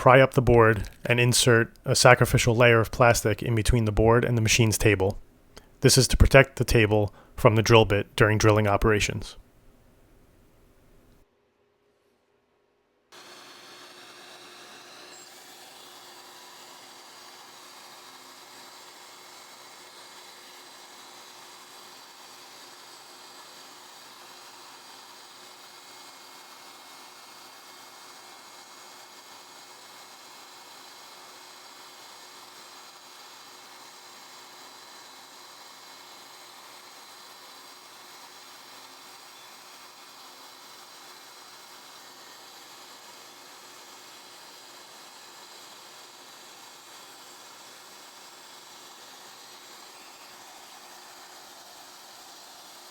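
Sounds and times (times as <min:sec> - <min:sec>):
milling spindle high whine: 0:44.9 - 0:52.9.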